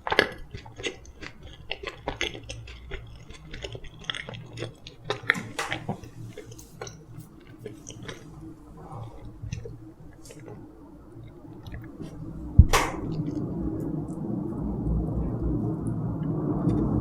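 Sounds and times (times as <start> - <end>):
person chewing food: 0.0 - 14.4.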